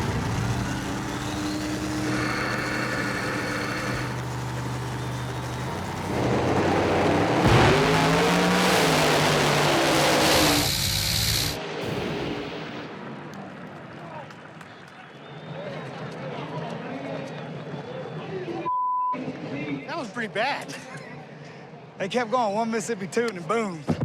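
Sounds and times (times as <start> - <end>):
drag cars idling: 0.0 - 11.6
cars launching at full throttle: 0.0 - 13.9.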